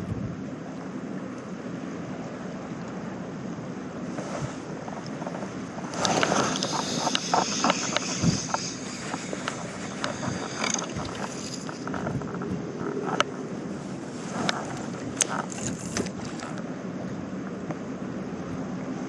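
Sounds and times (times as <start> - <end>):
wind on microphone: 0.0 - 0.6, 4.0 - 16.6
sea water: 0.0 - 19.0
sharp clicks and rattling: 6.0 - 13.3.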